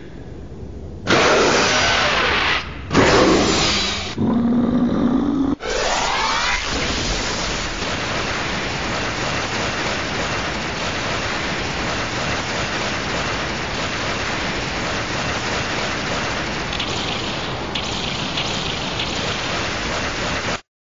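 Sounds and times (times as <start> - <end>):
rain-like hiss: 0.0 - 20.6
monster roar: 1.1 - 7.1.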